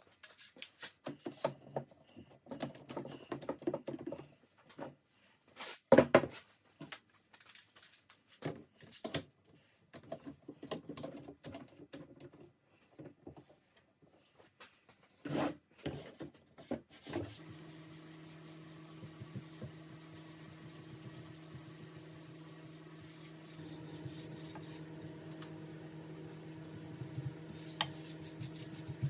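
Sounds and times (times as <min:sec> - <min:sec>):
low electric hum: 0:17.2 - 0:29.0.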